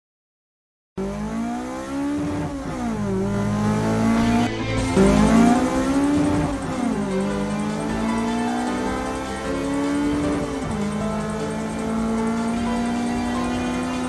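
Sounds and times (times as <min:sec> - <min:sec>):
car engine revving: 0:01.0 - 0:14.0.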